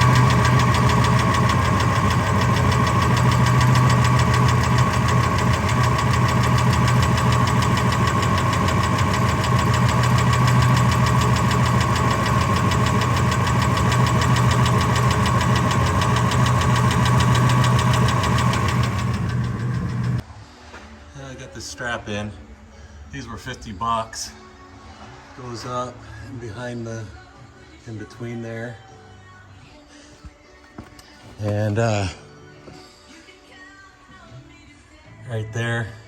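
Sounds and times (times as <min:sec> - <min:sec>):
engine running with ticking: 0:00.0 - 0:20.2.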